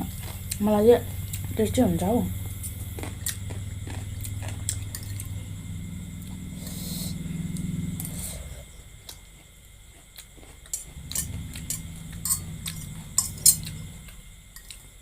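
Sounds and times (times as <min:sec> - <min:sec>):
utensils clinking against a bowl: 0:10.7 - 0:13.8.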